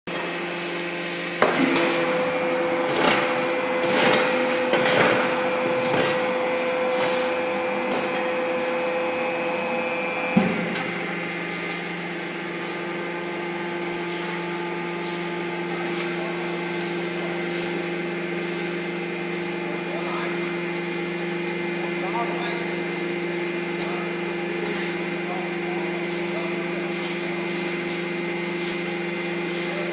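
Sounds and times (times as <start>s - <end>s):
baler machine humming: 0.1s - 29.9s.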